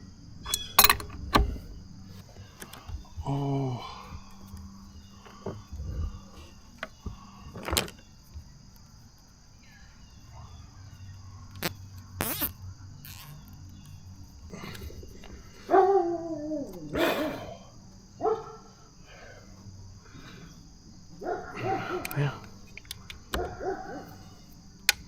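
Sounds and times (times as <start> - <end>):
crickets chirring: 0.0 - 25.0
metal parts and tools clinking: 0.4 - 1.7
dog barking: 15.7 - 17.3, 18.2 - 18.8, 21.2 - 22.2, 23.3 - 24.3.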